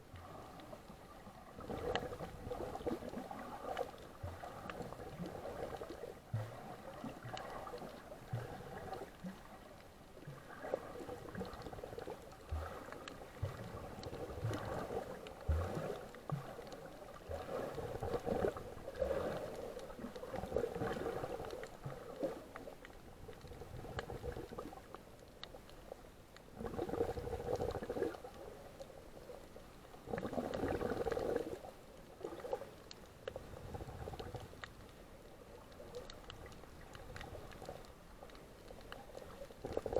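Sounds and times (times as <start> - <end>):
water sloshing and gurgling: 0.0 - 39.9.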